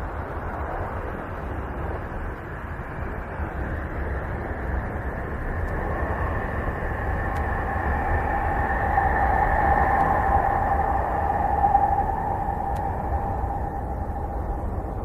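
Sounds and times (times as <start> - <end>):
faint steady tones: 0.0 - 15.0
noisy drone with deep rumble: 0.0 - 15.0.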